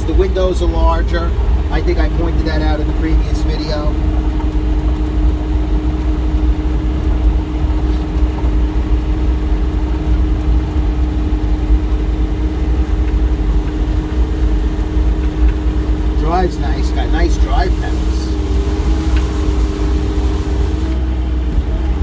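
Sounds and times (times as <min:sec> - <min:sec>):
diesel engine running: 0:00.0 - 0:22.0.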